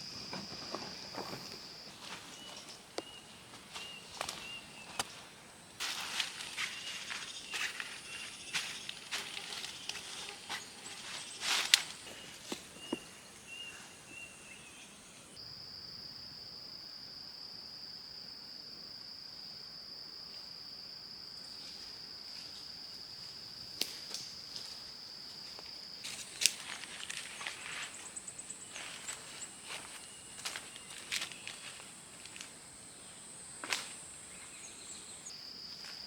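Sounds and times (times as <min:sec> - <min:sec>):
insects buzzing: 0:00.0 - 0:36.0
high-pitched insect drone: 0:05.8 - 0:15.6.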